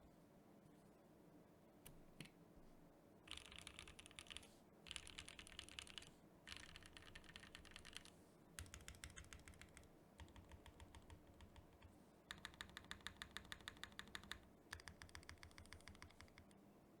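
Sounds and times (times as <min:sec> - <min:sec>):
mechanical keyboard typing: 0:03.3 - 0:16.5.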